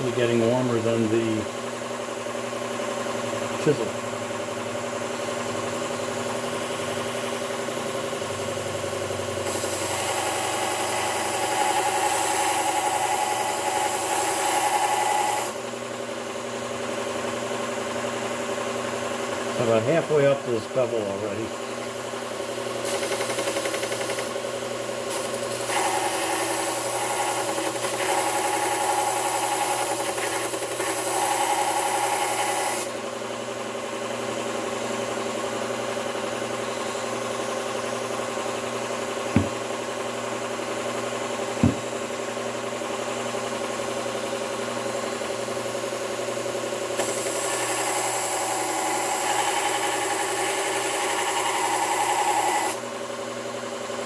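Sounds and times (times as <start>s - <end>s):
sharpener motor hum: 8.9s - 15.6s, 22.8s - 24.4s, 25.1s - 33.0s, 39.2s - 39.7s, 41.6s - 42.0s, 47.0s - 52.8s.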